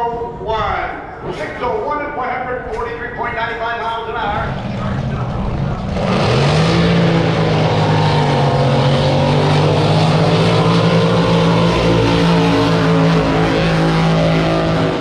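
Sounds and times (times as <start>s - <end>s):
racing boat engine at full throttle: 4.0s - 15.0s.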